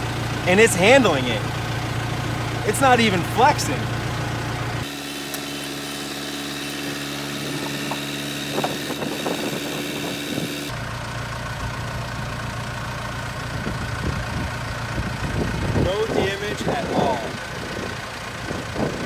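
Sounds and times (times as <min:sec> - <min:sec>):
diesel engine idling: 0:00.0 - 0:19.0.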